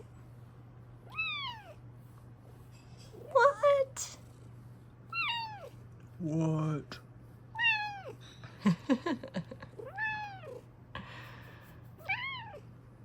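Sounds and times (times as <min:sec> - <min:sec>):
cat meowing: 0:01.1 - 0:01.8, 0:05.1 - 0:05.8, 0:07.6 - 0:08.2, 0:09.8 - 0:10.6, 0:12.0 - 0:12.6.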